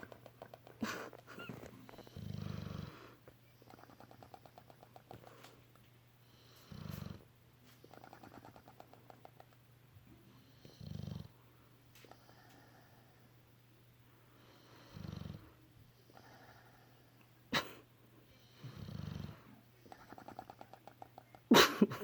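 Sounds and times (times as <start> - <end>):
dog snoring: 1.4 - 5.1, 6.3 - 7.3, 10.4 - 11.4, 14.5 - 17.0, 18.4 - 21.0
lips fluttering and bubbling: 3.6 - 5.2, 7.9 - 9.6.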